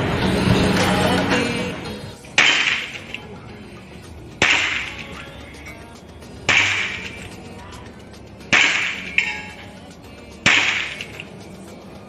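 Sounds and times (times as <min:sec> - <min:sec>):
pellet striking metal target: 0:02.3 - 0:03.3, 0:04.4 - 0:05.3, 0:06.4 - 0:07.4, 0:08.4 - 0:09.8, 0:10.4 - 0:11.3
air pistol shots cracking: 0:02.4 - 0:03.2, 0:04.4 - 0:05.2, 0:06.5 - 0:07.3, 0:08.5 - 0:09.2, 0:10.5 - 0:11.3.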